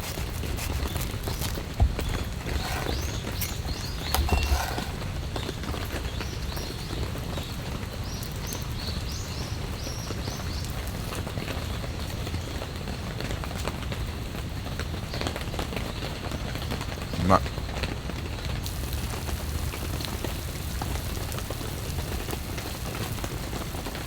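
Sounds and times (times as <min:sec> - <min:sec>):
steady rain: 0:06.0 - 0:24.0.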